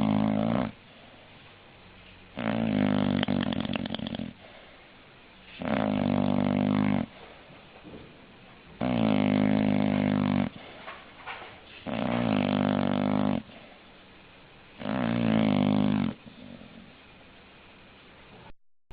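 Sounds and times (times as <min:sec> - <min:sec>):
dog snoring: 0:00.0 - 0:00.8, 0:02.3 - 0:04.8, 0:05.5 - 0:07.5, 0:08.8 - 0:10.9, 0:11.7 - 0:13.8, 0:14.8 - 0:17.0.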